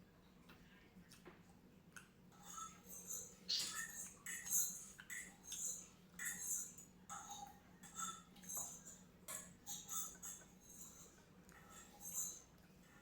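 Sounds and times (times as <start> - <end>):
chewing crisp food: 0.3 - 2.3.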